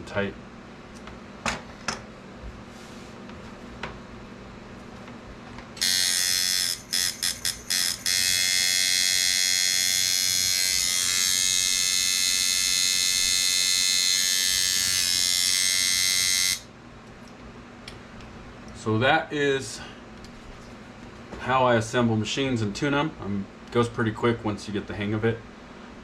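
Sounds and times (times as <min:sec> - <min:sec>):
tattoo machine buzzing: 0:05.8 - 0:16.7.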